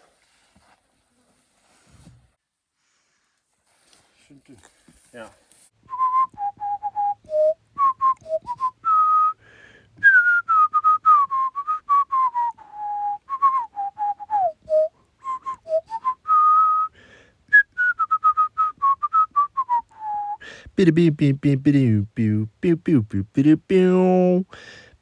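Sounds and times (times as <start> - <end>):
person whistling a tune: 5.8 - 9.4, 10.0 - 24.2.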